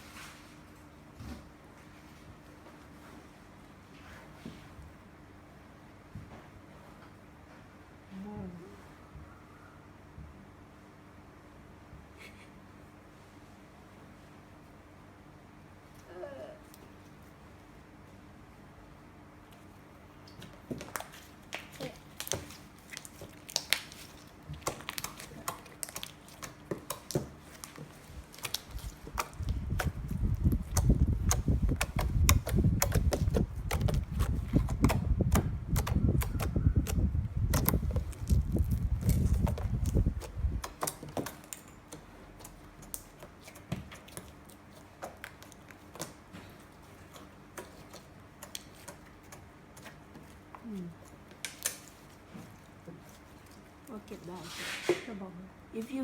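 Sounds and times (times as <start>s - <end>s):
slime squished by hand: 20.2s - 53.6s.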